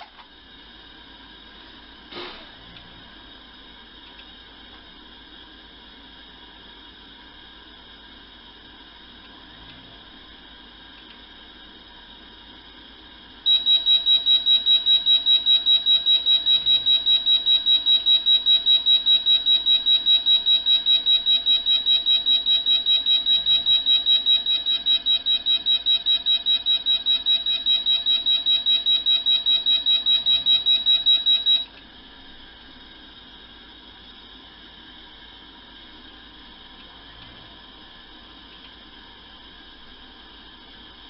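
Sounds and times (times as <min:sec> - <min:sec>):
fire alarm rapid beeping: 0:13.4 - 0:31.7.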